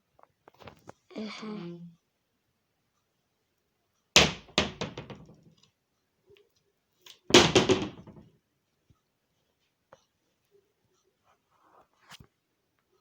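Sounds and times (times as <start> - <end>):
loud banging and rattling knocks: 4.2 - 5.4, 7.3 - 8.3.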